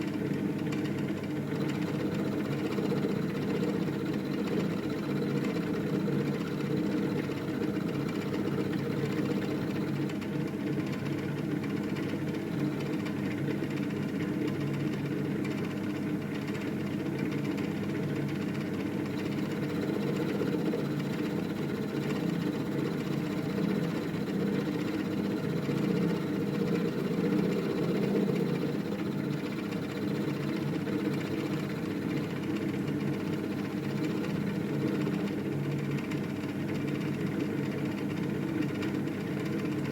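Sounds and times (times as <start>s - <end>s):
milling machine cutting metal: 19.1s - 32.5s.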